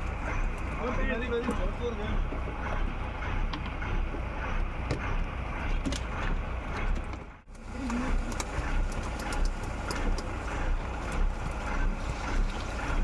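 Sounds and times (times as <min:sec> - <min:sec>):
boat engine running: 0:00.0 - 0:13.0
wind: 0:00.0 - 0:13.0.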